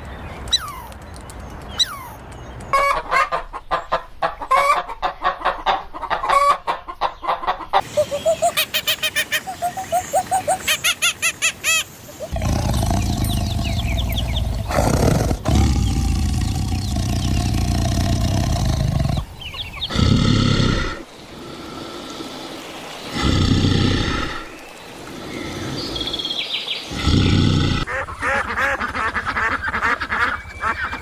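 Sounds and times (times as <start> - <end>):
large animal roaring: 12.3 - 22.4, 23.0 - 24.6, 26.9 - 27.9.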